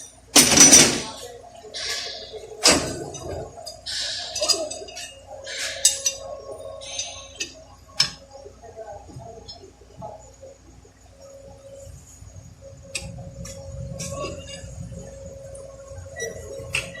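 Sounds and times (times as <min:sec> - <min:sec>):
metal parts clicking and clinking: 0:00.0 - 0:01.2, 0:01.8 - 0:08.2
faint steady hum: 0:00.0 - 0:17.0
metal parts scraping: 0:01.8 - 0:07.6.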